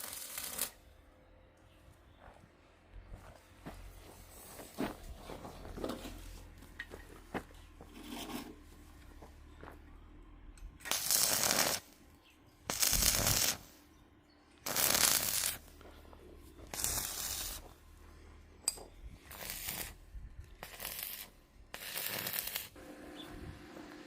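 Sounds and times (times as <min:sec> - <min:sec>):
harsh scraping strokes: 0:07.8 - 0:08.8.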